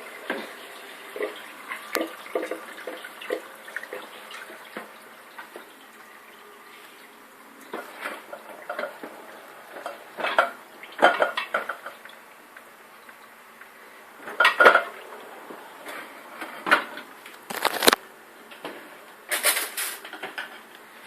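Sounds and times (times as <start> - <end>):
dishes and cutlery clinking: 9.8 - 12.0.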